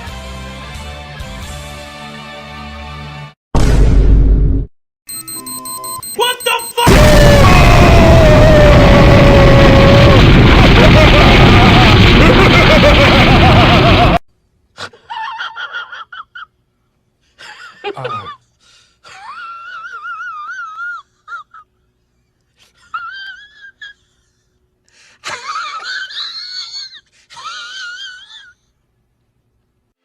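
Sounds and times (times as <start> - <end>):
high-pitched wheezing laugh: 14.8 - 16.6, 19.0 - 21.8, 22.6 - 24.6, 25.2 - 28.7.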